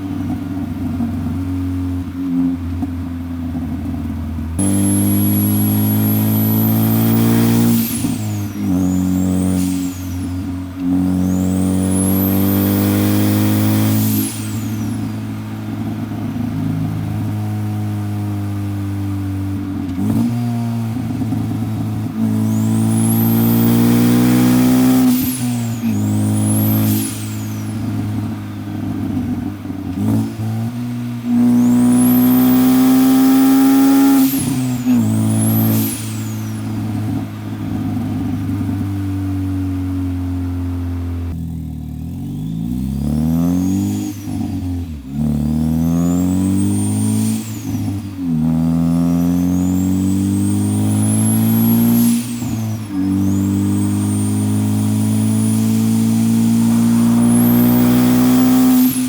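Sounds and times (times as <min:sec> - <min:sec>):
car engine revving through gears: 0:00.0 - 0:59.0
turbo whistle: 0:04.6 - 0:16.4, 0:22.2 - 0:29.3, 0:31.3 - 0:38.7, 0:42.3 - 0:59.0.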